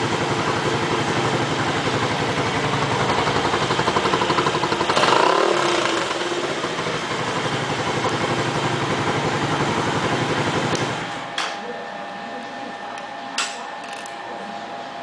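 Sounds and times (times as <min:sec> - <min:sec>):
motorcycle engine idling: 0:00.0 - 0:11.3.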